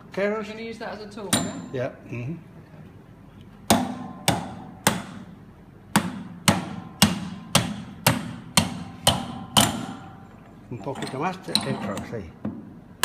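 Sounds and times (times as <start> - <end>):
hammer striking metal tool: 1.3 - 1.8, 3.7 - 5.3, 5.9 - 10.3.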